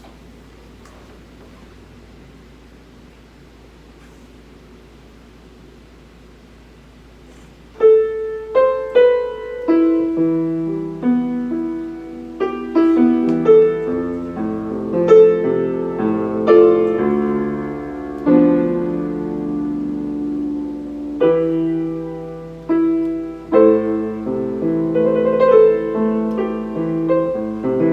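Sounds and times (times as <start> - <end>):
solo piano: 7.7 - 27.9.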